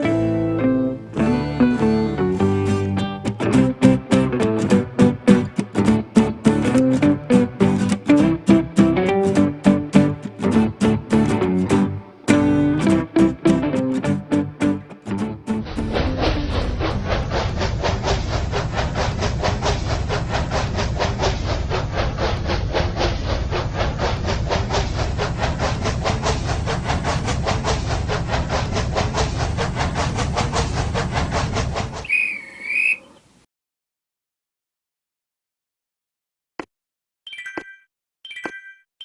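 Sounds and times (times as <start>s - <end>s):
toy train chuffing clatter: 15.6s - 33.1s
warbling train whistle: 32.0s - 33.1s.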